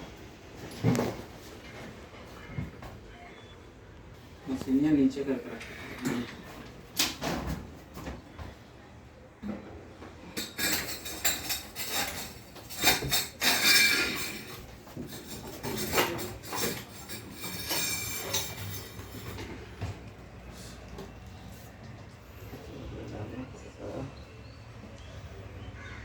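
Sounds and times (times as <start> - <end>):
metal parts clattering and scraping: 10.6 - 19.7.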